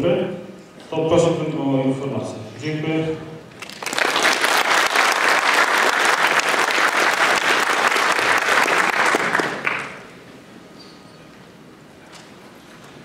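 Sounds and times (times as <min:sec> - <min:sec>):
audience applauding: 0:03.5 - 0:10.2.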